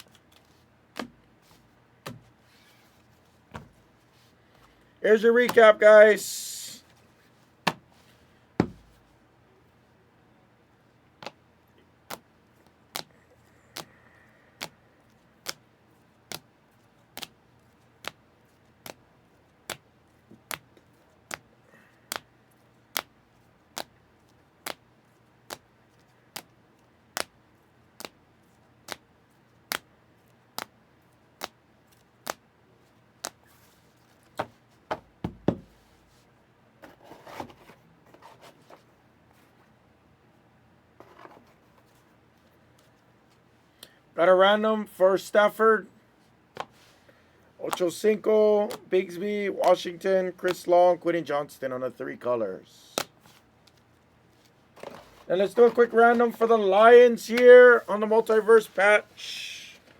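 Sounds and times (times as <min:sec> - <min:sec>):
cards tapping on table: 0:34.4 - 0:35.8.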